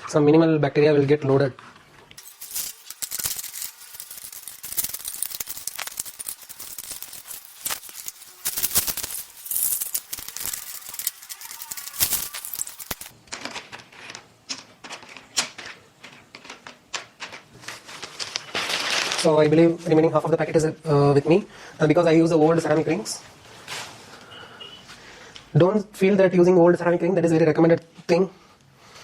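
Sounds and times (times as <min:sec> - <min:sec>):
ceramic rings rattling and clinking: 0:02.2 - 0:13.2.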